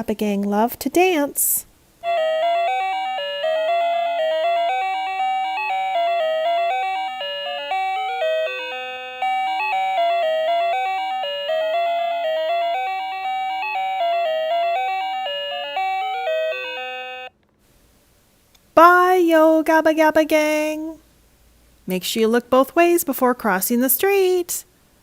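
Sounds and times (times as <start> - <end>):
tinny electronic toy melody: 2.0 - 17.4.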